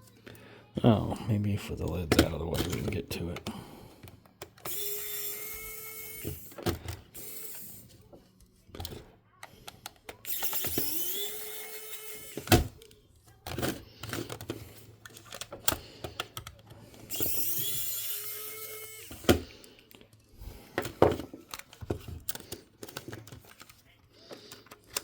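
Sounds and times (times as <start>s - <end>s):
small motor whining: 4.6s - 8.0s, 10.2s - 12.8s, 17.0s - 19.6s
clicks of small parts handled: 20.8s - 25.0s.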